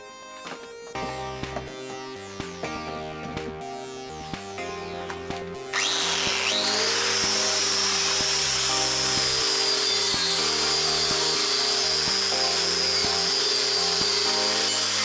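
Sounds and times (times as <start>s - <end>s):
music playing: 0.0s - 15.0s
power tool motor whine: 5.7s - 15.0s.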